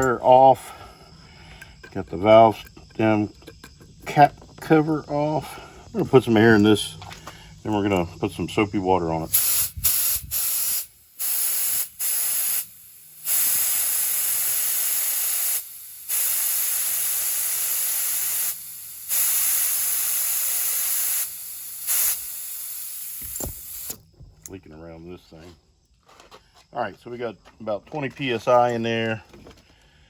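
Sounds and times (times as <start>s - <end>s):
compressed air hissing into tire: 9.2s - 24.0s.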